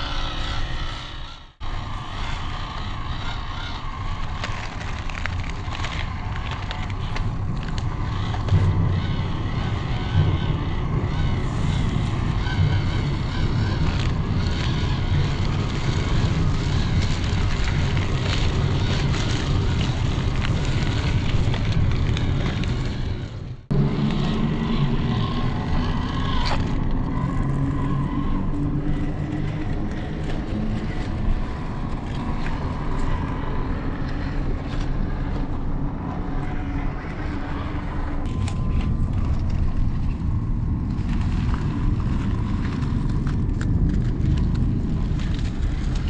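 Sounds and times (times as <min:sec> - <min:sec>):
rc car motor and gears whining: 0:00.0 - 0:30.6
wheels crunching over ground: 0:00.0 - 0:46.0.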